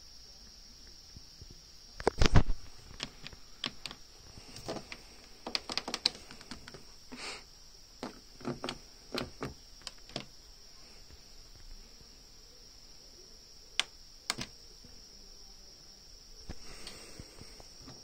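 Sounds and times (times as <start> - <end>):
faint high whine: 0.0 - 18.0.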